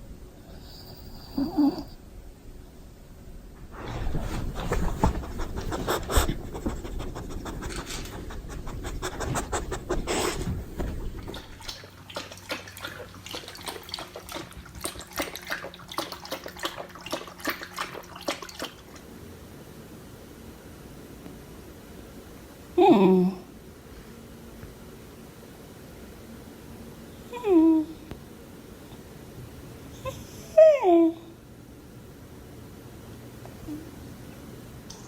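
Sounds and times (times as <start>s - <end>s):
dog panting: 3.8s - 18.7s.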